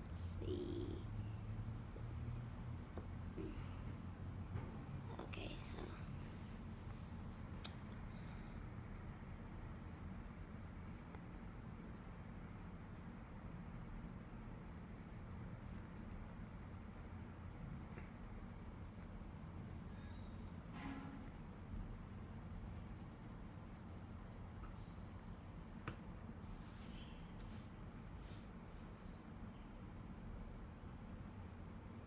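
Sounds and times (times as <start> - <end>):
pencil scratching on paper: 18.5 - 26.9.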